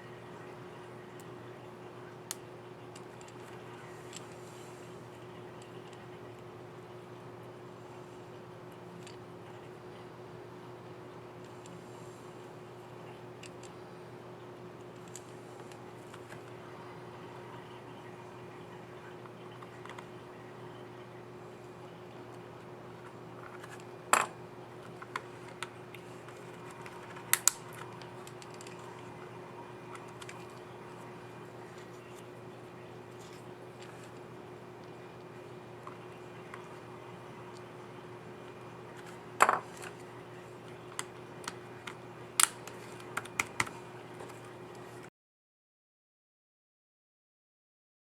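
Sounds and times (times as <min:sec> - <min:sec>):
laptop keyboard keys clicking: 0:41.0 - 0:43.8.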